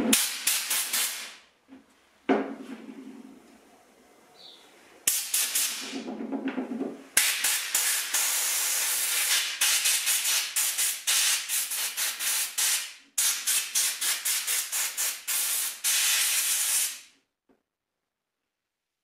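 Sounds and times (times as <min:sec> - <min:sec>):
pressurised spray hissing: 0:07.2 - 0:17.0.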